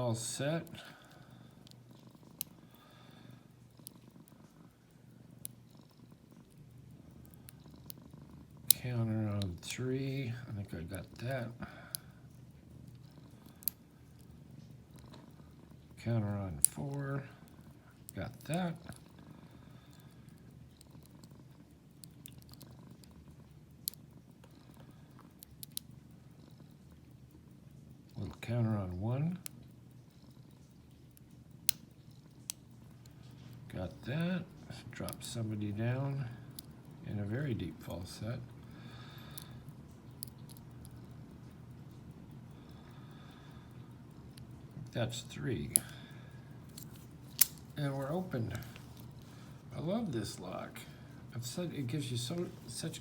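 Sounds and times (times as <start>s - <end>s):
cat purring: 0.0s - 53.0s
faint sharp clicks: 18.3s - 28.3s, 29.4s - 33.7s, 36.3s - 37.0s, 37.9s - 49.5s
lock picks clicking in padlock: 46.6s - 47.7s.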